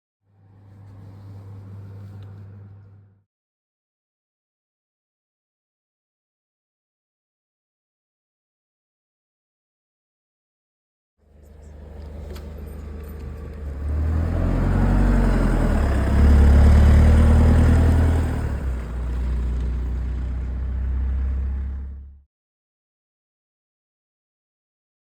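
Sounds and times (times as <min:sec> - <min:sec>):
vehicle engine running: 0:11.2 - 0:22.2.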